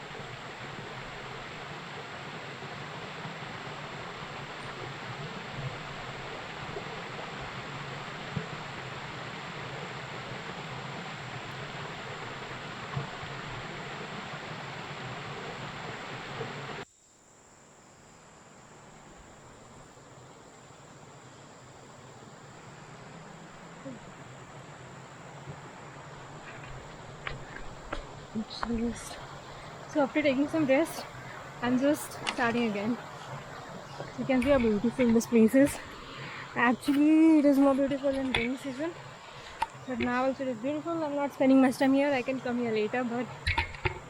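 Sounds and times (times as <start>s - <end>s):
water rushing in a stream: 0.0s - 16.8s, 18.4s - 44.0s
high insect drone: 0.0s - 44.0s.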